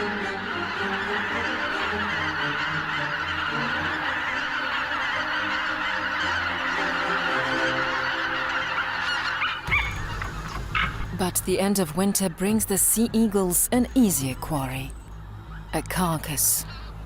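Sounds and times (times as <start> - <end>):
geese honking: 0.0 - 17.0.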